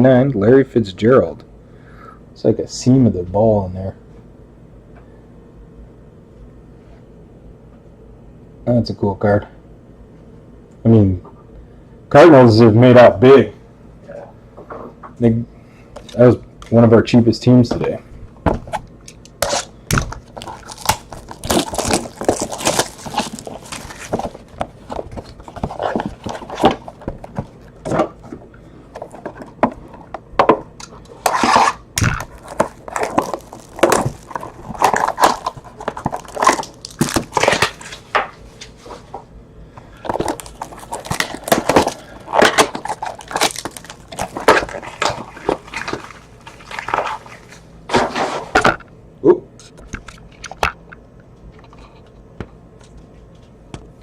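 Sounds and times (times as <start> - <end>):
plastic packaging crinkling: 18.8 - 30.2, 30.8 - 38.8, 39.9 - 48.0
cards rustling: 19.1 - 30.2, 30.8 - 39.1, 40.0 - 48.7.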